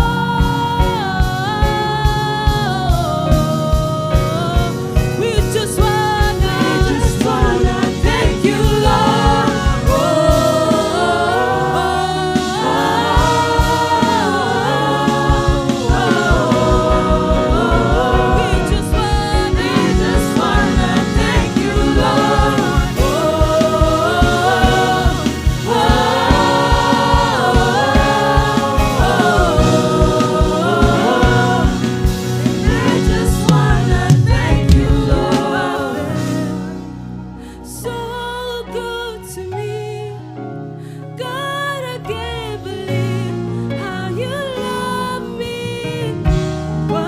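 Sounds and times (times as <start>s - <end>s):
backing band with steady beat: 0.0s - 37.3s
gospel choir singing: 0.0s - 47.0s.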